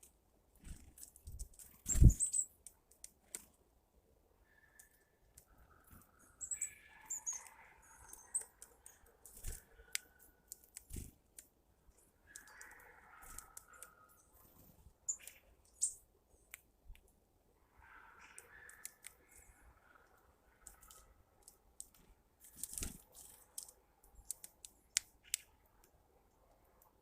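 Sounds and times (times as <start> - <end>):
bird chirps and calls: 1.8 - 2.6, 4.4 - 10.0, 15.1 - 16.5.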